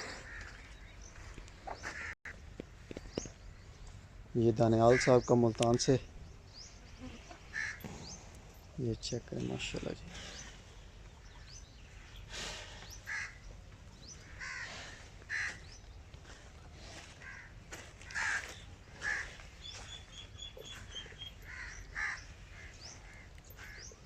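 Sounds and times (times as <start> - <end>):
crows cawing: 1.8 - 2.2, 7.5 - 7.9, 13.0 - 13.4, 14.2 - 15.8, 17.0 - 19.4, 21.4 - 23.9.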